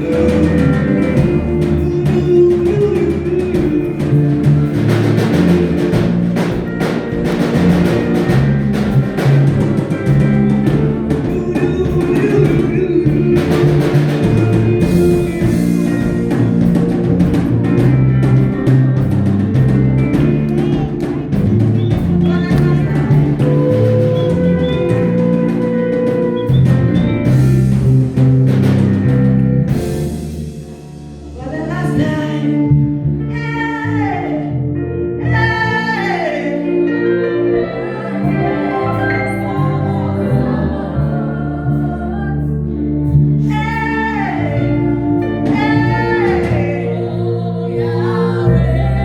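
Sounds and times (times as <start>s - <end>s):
person singing: 0.0s - 4.6s, 9.8s - 16.4s, 22.2s - 26.5s, 35.2s - 42.8s, 43.4s - 49.0s
live band playing: 0.0s - 49.0s.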